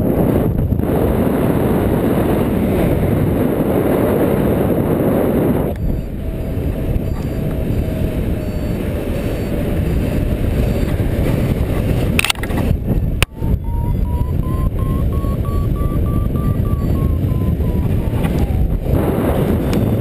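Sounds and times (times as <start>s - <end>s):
wind buffeting microphone: 0.0s - 20.0s
variometer electronic tone: 4.4s - 20.0s.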